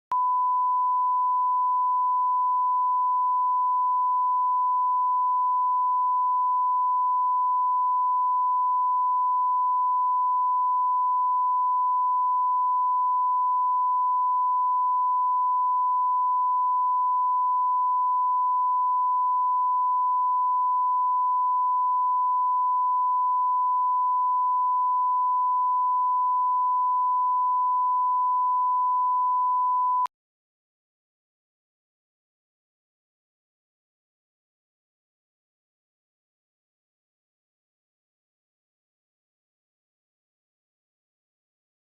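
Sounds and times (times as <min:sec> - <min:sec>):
steady sine test tone: 0:00.1 - 0:30.1.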